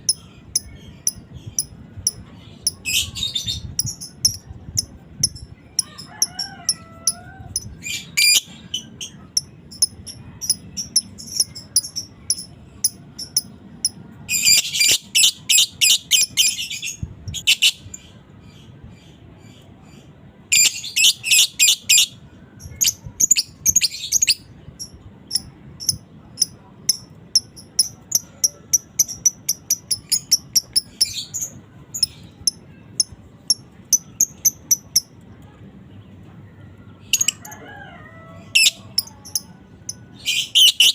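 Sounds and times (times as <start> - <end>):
lovebird rapid chattering: 3.7 - 6.1, 9.4 - 16.3, 22.8 - 31.4, 32.0 - 35.1.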